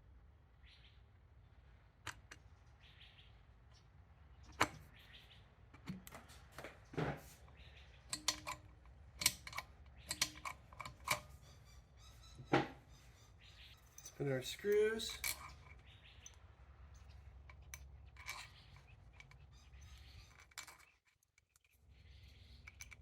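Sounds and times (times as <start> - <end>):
metal parts clicking and clinking: 8.0 - 11.4, 13.6 - 23.0.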